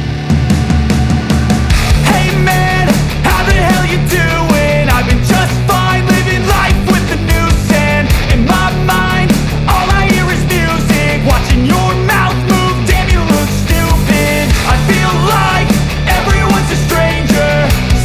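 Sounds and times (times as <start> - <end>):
loud rock music with singing: 0.0 - 18.0.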